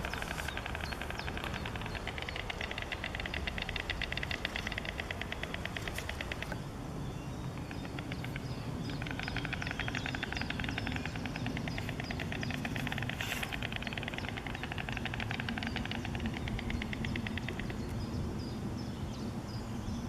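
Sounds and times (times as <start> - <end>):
storks clattering bills: 0.0 - 6.6.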